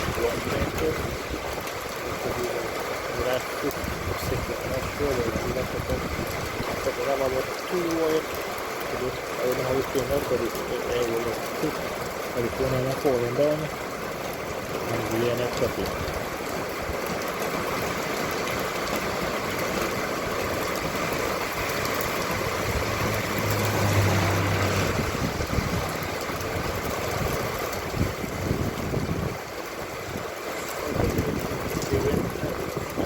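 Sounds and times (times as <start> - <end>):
rain hiss: 0.0 - 33.0
vehicle engine hum: 21.2 - 29.0.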